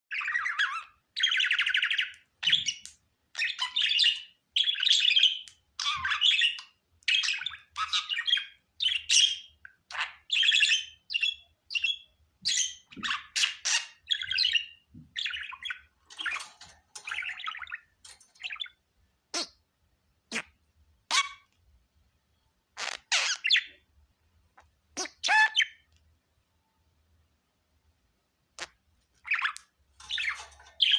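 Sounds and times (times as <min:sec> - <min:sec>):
budgerigar chirps and squawks: 0:12.5 - 0:17.7, 0:19.3 - 0:19.6, 0:20.3 - 0:21.5, 0:22.8 - 0:23.8, 0:25.0 - 0:25.9.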